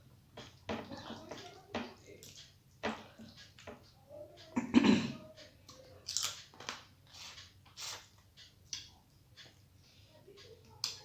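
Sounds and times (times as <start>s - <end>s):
person chewing food: 5.7s - 9.9s.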